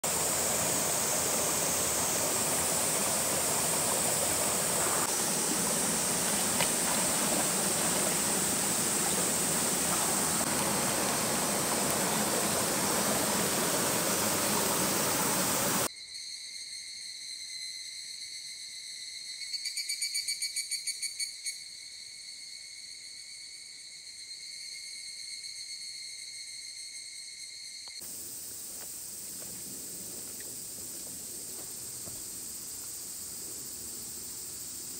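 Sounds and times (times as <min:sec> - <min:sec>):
rushing water: 0:00.0 - 0:15.9
insects trilling: 0:00.0 - 0:34.9.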